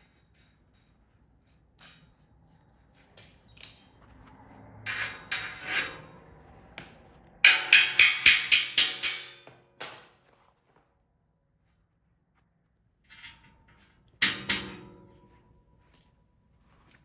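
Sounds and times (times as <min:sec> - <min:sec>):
metal scraping and rubbing: 0:00.0 - 0:06.7
sharp metallic taps: 0:06.8 - 0:10.0.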